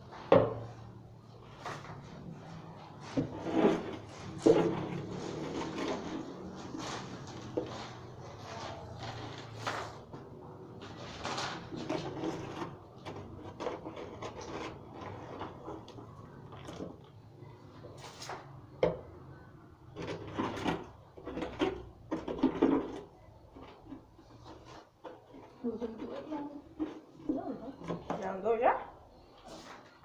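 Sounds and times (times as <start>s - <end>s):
scraping and knocking in fireplace: 0.0s - 30.0s.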